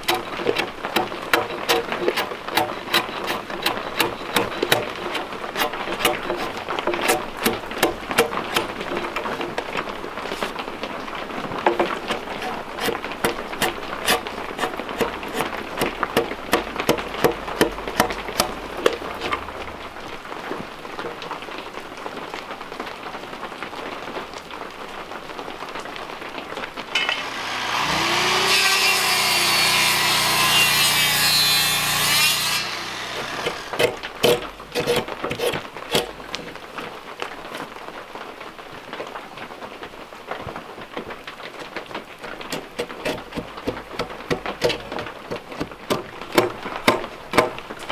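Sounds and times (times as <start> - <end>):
irregular knocks and taps: 0.0 - 9.7, 11.6 - 19.4, 42.5 - 47.9
band sawmill cutting wood: 0.0 - 20.0, 27.0 - 37.7, 42.4 - 47.9.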